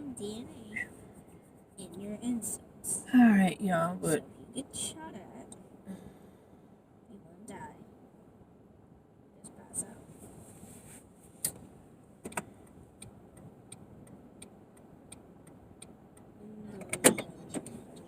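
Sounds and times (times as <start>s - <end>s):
car turn signal clicking: 12.3s - 16.3s.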